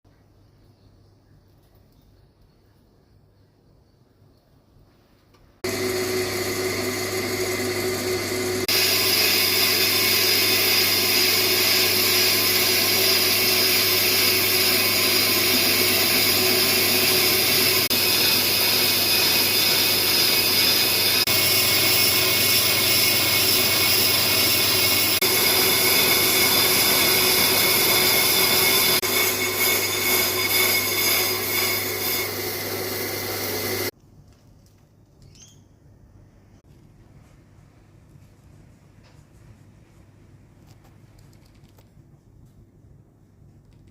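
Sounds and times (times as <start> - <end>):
lathe humming: 5.6 - 33.9
high metallic cutting noise: 7.8 - 33.9.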